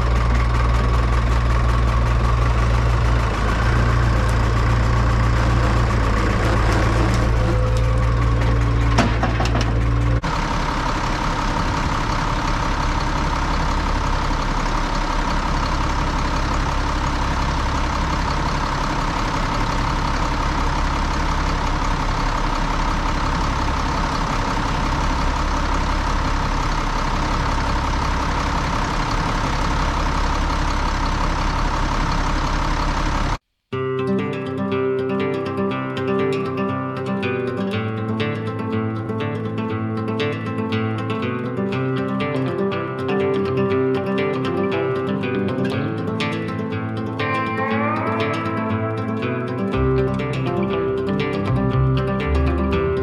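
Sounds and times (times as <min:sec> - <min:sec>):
engine with high whine: 0:00.0 - 0:33.4
farm machinery engines running: 0:00.0 - 0:33.4, 0:41.6 - 0:53.0.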